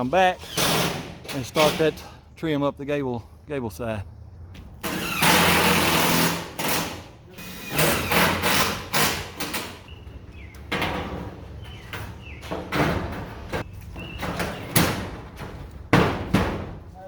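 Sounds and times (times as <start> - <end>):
sheet metal knocks and rattles: 10.7 - 16.9.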